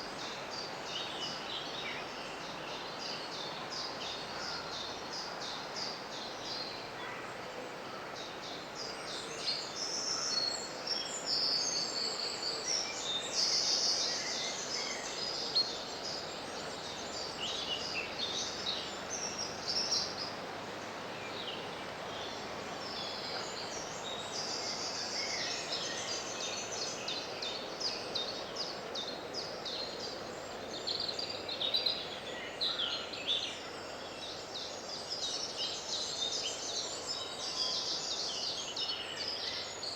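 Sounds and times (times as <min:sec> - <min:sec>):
gentle stream rushing: 0:14.6 - 0:32.3.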